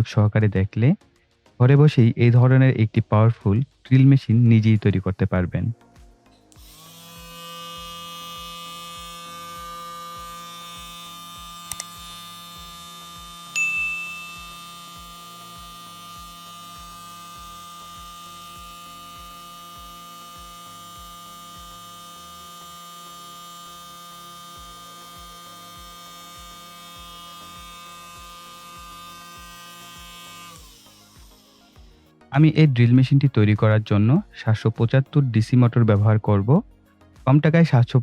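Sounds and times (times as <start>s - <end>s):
small electric motor whining: 6.5s - 32.2s
sharp click with high ping: 13.6s - 14.2s.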